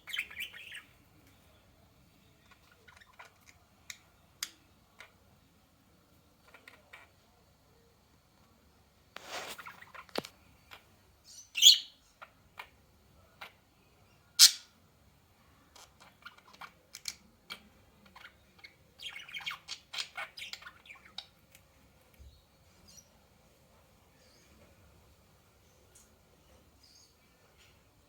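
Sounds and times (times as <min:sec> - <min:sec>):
bird chirps and clicks: 0:02.4 - 0:05.2, 0:15.7 - 0:22.3
bird squawking: 0:11.6 - 0:12.0.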